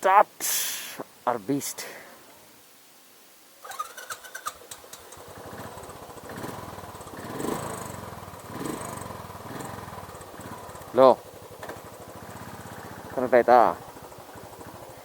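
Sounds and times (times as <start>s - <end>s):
motorcycle engine starting and idling: 3.6s - 15.0s
engine revving: 3.7s - 14.9s.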